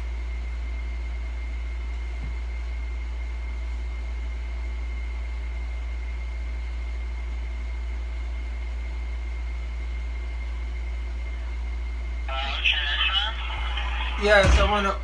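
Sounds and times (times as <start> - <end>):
high whine: 12.3 - 15.0
low hum: 12.4 - 15.0.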